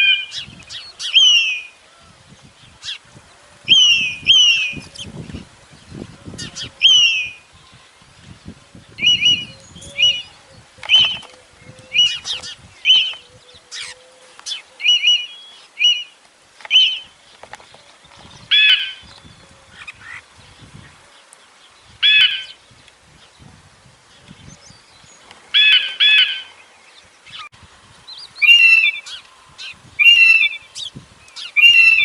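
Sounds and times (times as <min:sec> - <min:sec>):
bird of prey cries: 0:00.0 - 0:02.1, 0:06.4 - 0:07.5, 0:18.5 - 0:19.0, 0:22.0 - 0:22.6, 0:25.6 - 0:26.5, 0:28.4 - 0:32.0
harsh bird calls: 0:00.0 - 0:23.4, 0:24.2 - 0:32.0.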